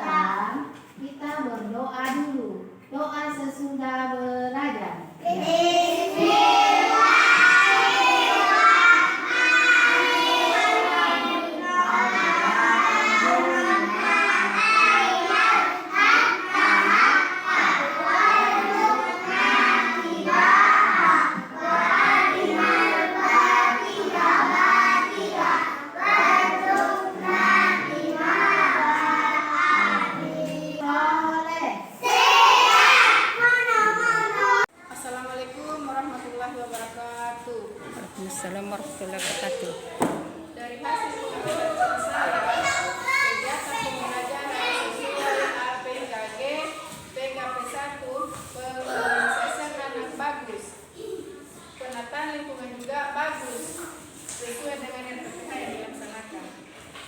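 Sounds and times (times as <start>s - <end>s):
children singing together: 5.2s - 31.0s, 32.0s - 34.7s.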